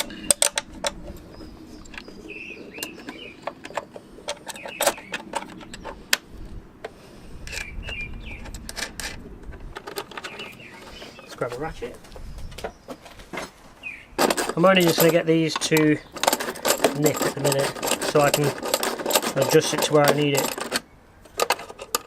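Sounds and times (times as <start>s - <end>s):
metal hinge clicks and knocks: 0.0s - 1.2s, 2.7s - 6.2s, 7.5s - 11.0s, 14.2s - 22.0s
birds chirping: 0.0s - 22.0s.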